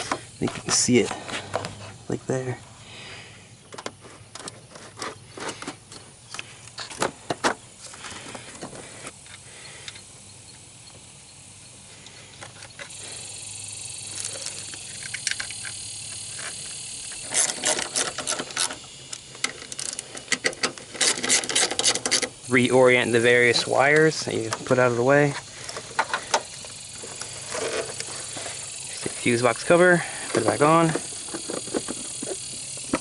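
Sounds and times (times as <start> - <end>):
wiring rustling: 14.0 - 33.0.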